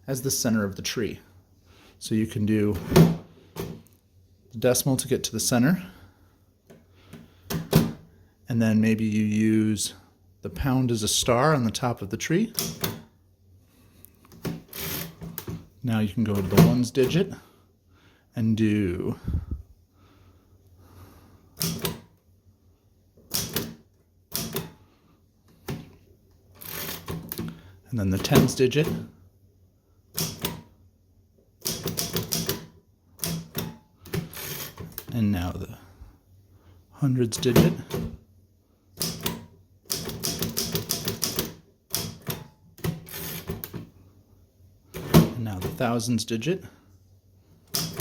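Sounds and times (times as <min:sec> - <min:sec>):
manual typewriter clacking: 0:12.5 - 0:13.0, 0:21.6 - 0:22.0, 0:23.3 - 0:24.7, 0:30.2 - 0:30.6, 0:31.6 - 0:35.1, 0:39.0 - 0:43.8, 0:47.7 - 0:48.0.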